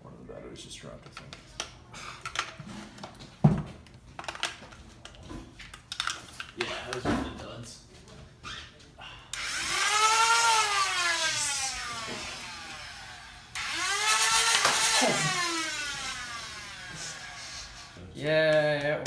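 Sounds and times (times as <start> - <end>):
toy blaster flywheel motors revving: 9.3 - 18.0.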